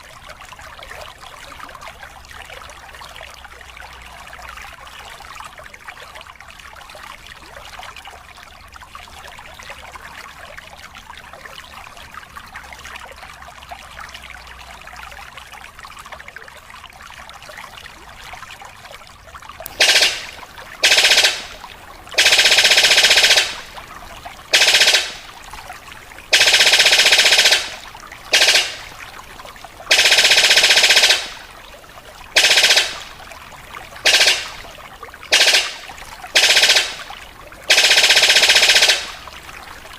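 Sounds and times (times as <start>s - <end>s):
water trickling: 0.0s - 39.9s
bird calling in rattling bursts: 19.7s - 31.6s, 32.3s - 39.4s.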